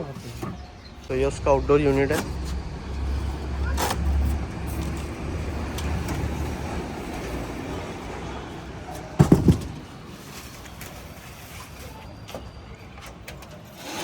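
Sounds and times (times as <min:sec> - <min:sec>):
road traffic rumble: 0:00.0 - 0:13.9
heavy thumps: 0:09.2 - 0:09.9.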